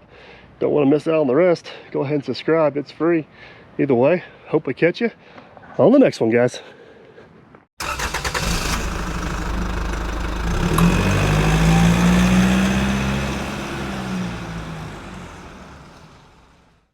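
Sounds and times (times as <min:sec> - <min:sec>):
engine running: 0:07.8 - 0:16.8.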